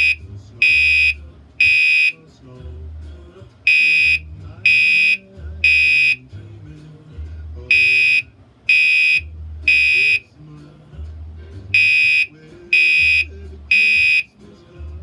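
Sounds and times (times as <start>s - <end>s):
fire alarm horn beeps: 0.0s - 2.2s, 3.7s - 6.2s, 7.7s - 10.3s, 11.7s - 14.3s.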